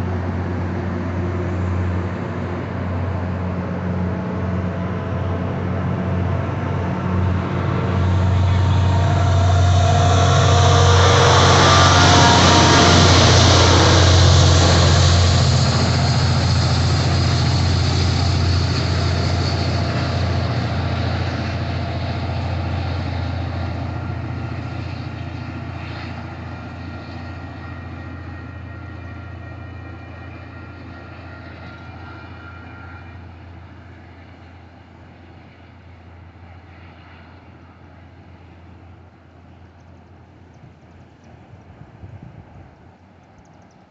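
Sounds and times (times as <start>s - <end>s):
diesel train rumbling: 0.0s - 43.9s.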